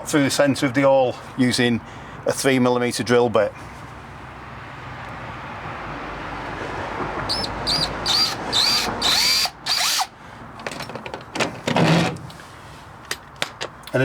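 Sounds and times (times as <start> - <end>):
power drill bursts: 7.3 - 10.1.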